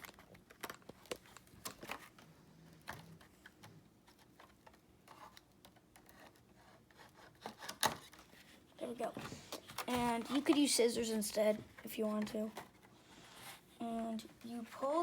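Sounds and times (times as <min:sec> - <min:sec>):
packaging crinkling and clicking: 0:00.0 - 0:06.5.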